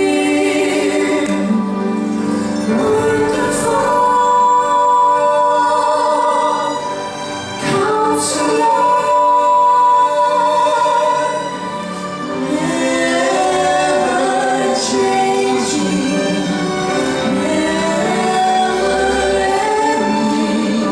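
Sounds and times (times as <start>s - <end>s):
choir singing: 0.0s - 20.9s
orchestra playing: 11.8s - 20.9s.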